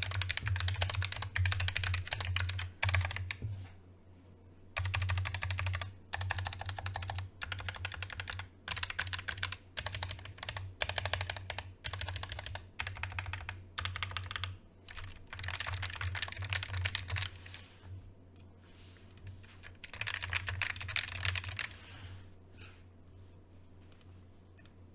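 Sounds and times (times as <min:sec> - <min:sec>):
fast keyboard typing: 0:00.0 - 0:03.4, 0:04.8 - 0:17.6, 0:19.2 - 0:21.8.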